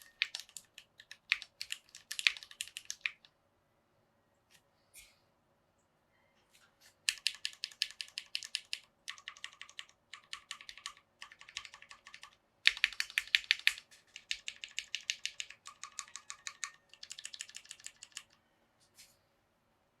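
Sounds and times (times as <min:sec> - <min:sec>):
mechanical keyboard typing: 0:00.0 - 0:03.3, 0:07.1 - 0:18.4.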